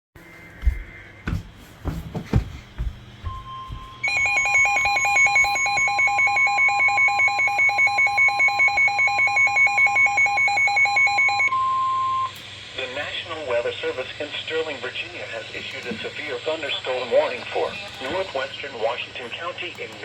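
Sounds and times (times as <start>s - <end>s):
rapidly pulsing electronic alarm: 3.2s - 12.4s
steady electronic alarm tone: 3.2s - 12.4s.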